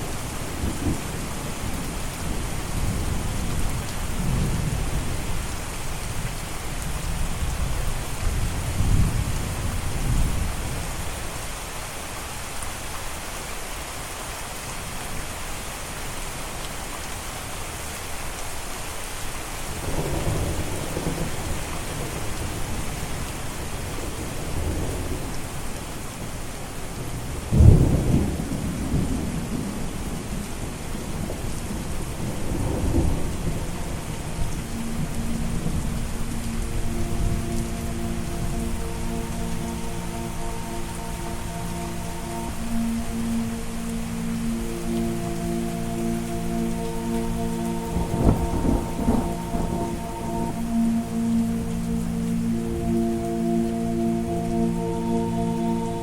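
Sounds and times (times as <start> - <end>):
steady rain: 0.0 - 56.0
soft sustained musical tones: 30.4 - 56.0
thunder rumbling: 31.2 - 53.5.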